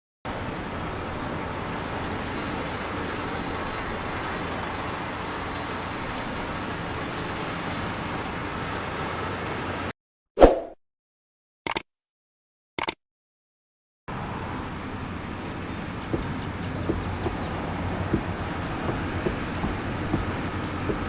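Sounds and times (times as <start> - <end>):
diesel engine droning: 0.3 - 9.9, 14.1 - 21.0.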